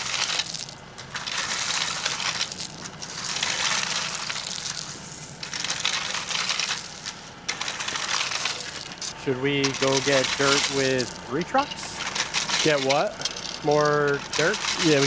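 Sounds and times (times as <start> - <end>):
hand tool scraping soil and gravel: 0.0 - 15.0.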